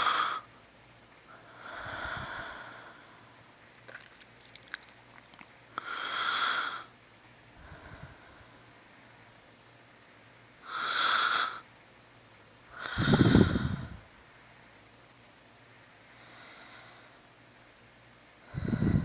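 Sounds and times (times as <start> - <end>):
breathy hiss: 0.0 - 0.5, 1.3 - 4.9, 5.7 - 9.3, 10.6 - 11.7, 12.7 - 14.1, 16.0 - 17.3
person snoring: 10.7 - 11.6, 12.8 - 14.0.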